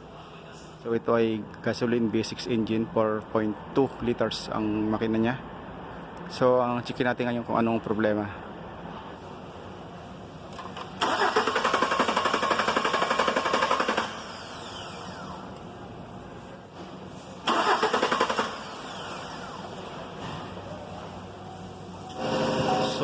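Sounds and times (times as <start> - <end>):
starter cranking engine: 11.0 - 15.3, 17.4 - 19.5.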